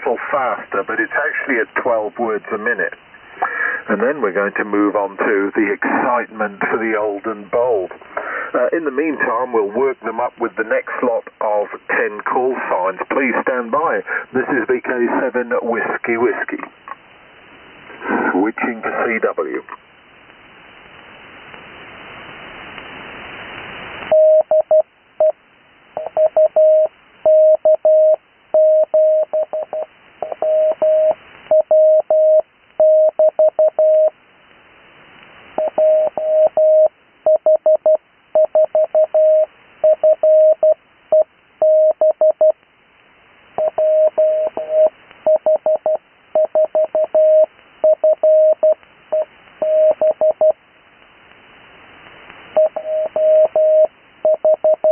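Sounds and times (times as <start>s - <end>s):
radio band noise hiss: 0.0s - 27.3s, 29.4s - 37.3s, 39.3s - 41.6s, 42.2s - 54.9s
morse code beeps: 24.1s - 25.4s, 26.0s - 34.1s, 35.6s - 42.6s, 43.6s - 50.6s, 52.6s - 54.9s.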